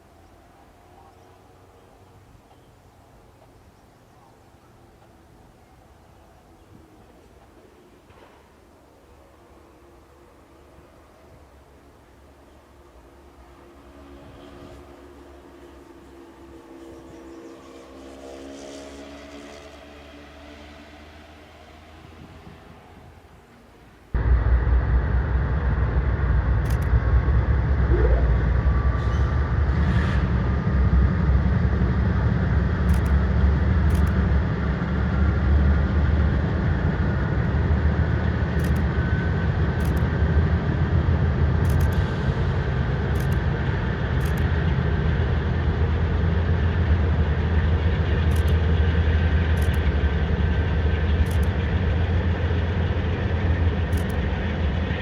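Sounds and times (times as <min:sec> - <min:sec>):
freight train rumbling: 0:00.0 - 0:20.0, 0:21.0 - 0:55.0
sharp clicks: 0:26.6 - 0:27.0, 0:32.8 - 0:34.3, 0:38.5 - 0:39.0, 0:39.8 - 0:40.2, 0:41.6 - 0:42.2, 0:43.1 - 0:43.6, 0:44.2 - 0:44.8, 0:48.1 - 0:51.8, 0:53.8 - 0:54.4
faint high squeal: 0:27.8 - 0:30.5.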